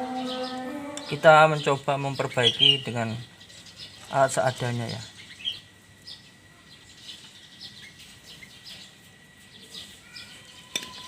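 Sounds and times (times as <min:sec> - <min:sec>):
faint high-pitched tone: 0:00.0 - 0:01.6, 0:10.0 - 0:11.0
faint bird chirps: 0:00.0 - 0:11.0.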